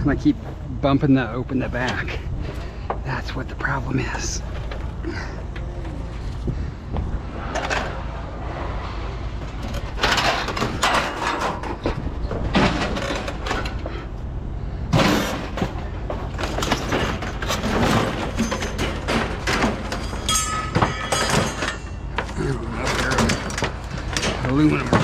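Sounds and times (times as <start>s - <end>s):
steady low rumble: 0.0s - 25.0s
scrap metal scraping and clattering: 7.2s - 14.1s, 14.9s - 25.0s.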